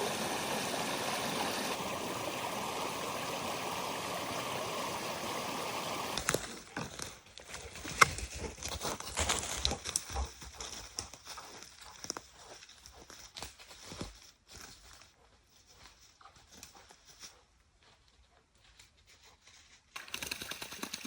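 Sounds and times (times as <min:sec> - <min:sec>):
twigs and leaf litter crackling: 0:06.2 - 0:15.0.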